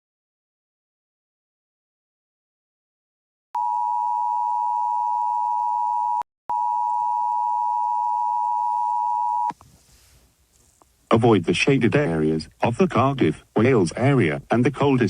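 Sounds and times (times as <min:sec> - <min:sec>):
two-tone attention signal: 0:03.6 - 0:09.5.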